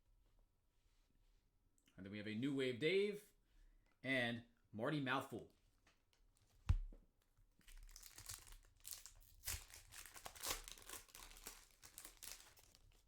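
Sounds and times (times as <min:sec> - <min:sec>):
wrapper crinkling and tearing: 0:07.6 - 0:13.0.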